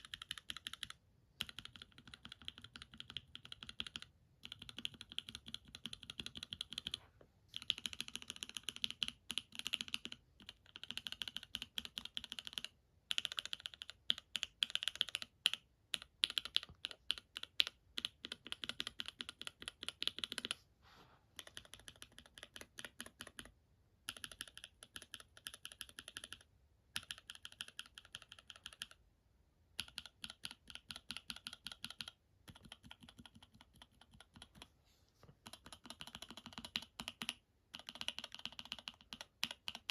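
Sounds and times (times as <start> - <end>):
mechanical keyboard clacking: 7.6 - 20.5, 29.8 - 34.6, 35.4 - 39.9.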